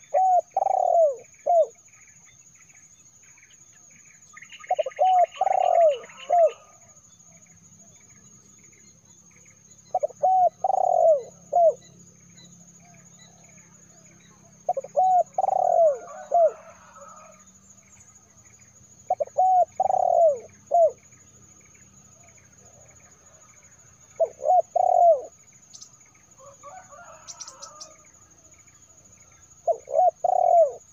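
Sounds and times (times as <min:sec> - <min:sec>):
dove cooing: 0:00.0 - 0:01.8, 0:04.7 - 0:06.9, 0:09.9 - 0:11.9, 0:14.7 - 0:17.4, 0:19.1 - 0:21.1, 0:22.2 - 0:25.4, 0:28.9 - 0:30.9
faint bird chirping: 0:00.0 - 0:30.9.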